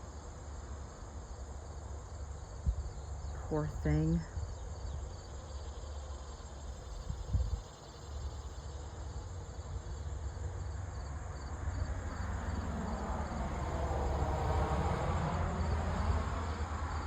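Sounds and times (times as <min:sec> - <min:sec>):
insects chirping: 0:00.2 - 0:14.9
low outdoor rumble: 0:06.8 - 0:17.0.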